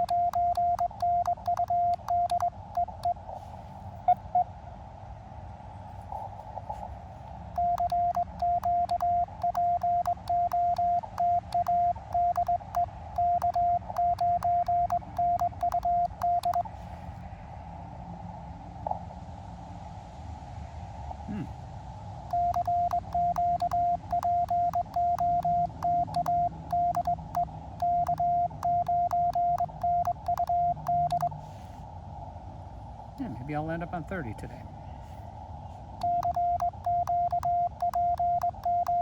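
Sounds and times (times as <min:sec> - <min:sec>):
key click: 0:00.0 - 0:03.1, 0:07.6 - 0:16.6, 0:22.3 - 0:31.3
morse code sidetone beeps: 0:00.0 - 0:03.2, 0:07.6 - 0:16.6, 0:22.3 - 0:31.4, 0:36.0 - 0:39.0.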